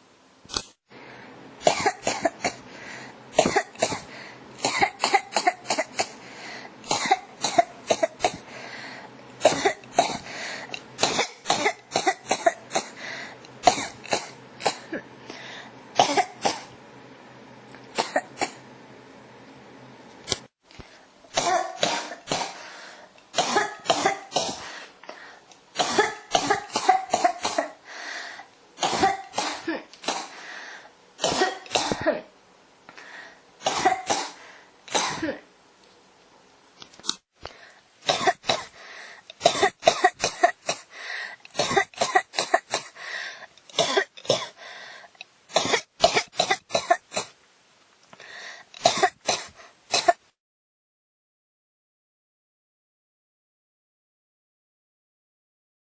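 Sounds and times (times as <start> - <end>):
person coughing: 1.7 - 2.7, 3.4 - 6.2, 6.9 - 8.5, 9.4 - 13.0, 13.6 - 15.1, 16.0 - 16.7, 18.0 - 18.6, 21.3 - 22.8, 23.4 - 24.9, 25.8 - 27.8, 28.8 - 30.4, 31.2 - 32.3, 33.7 - 35.5, 38.1 - 38.8, 39.4 - 40.9, 41.5 - 43.0, 43.7 - 44.6, 45.5 - 47.3, 48.8 - 50.2.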